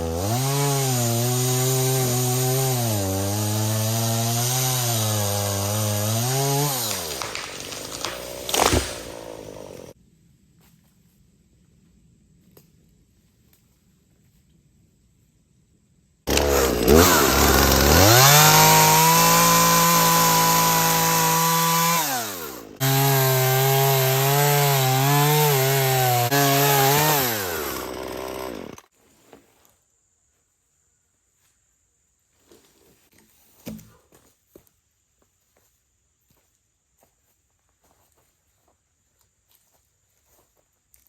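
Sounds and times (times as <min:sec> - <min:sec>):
gas saw engine revving: 0:00.0 - 0:10.0, 0:16.3 - 0:28.8.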